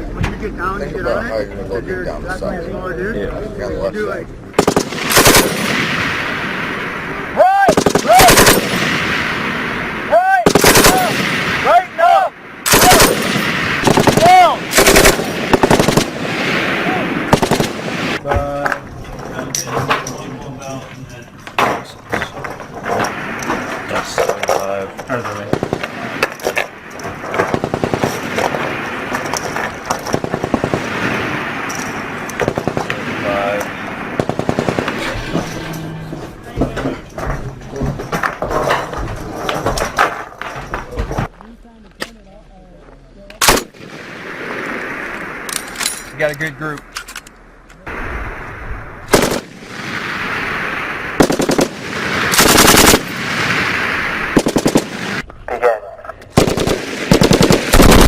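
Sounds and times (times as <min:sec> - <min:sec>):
machine gun firing bursts: 0:04.6 - 0:06.0, 0:07.7 - 0:08.9, 0:10.4 - 0:11.3, 0:12.7 - 0:16.4, 0:17.3 - 0:18.2, 0:25.5 - 0:26.0, 0:27.4 - 0:28.7, 0:30.1 - 0:31.1, 0:32.4 - 0:33.0, 0:34.2 - 0:35.2, 0:49.1 - 0:49.8, 0:51.2 - 0:53.2, 0:54.4 - 0:55.2, 0:56.4 - 0:58.0
gunfire echo: 0:04.6 - 0:11.8, 0:12.6 - 0:18.2, 0:25.4 - 0:35.4, 0:43.4 - 0:45.7, 0:49.1 - 0:55.2, 0:56.4 - 0:58.0.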